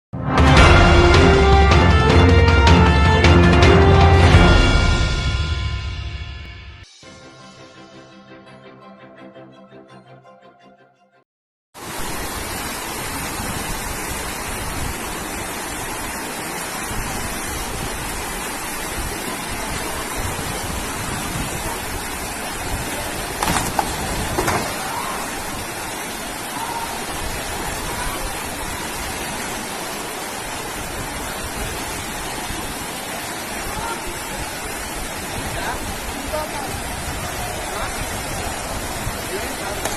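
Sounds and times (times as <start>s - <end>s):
heavy rain: 0.3s - 5.9s, 11.8s - 39.9s
rushing floodwater: 11.8s - 39.9s.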